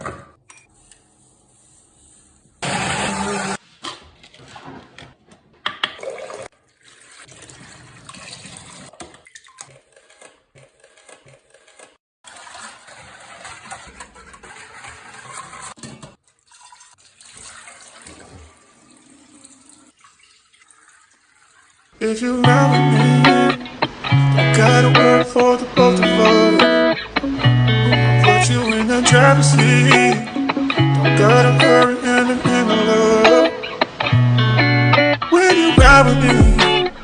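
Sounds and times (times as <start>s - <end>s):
water running and splashing: 6.0s - 9.8s, 12.2s - 22.0s.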